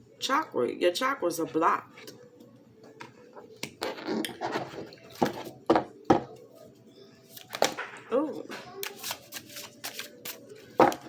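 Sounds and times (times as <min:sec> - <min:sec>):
cards rustling: 0:08.8 - 0:11.0
cards slapping and tapping: 0:08.8 - 0:11.0.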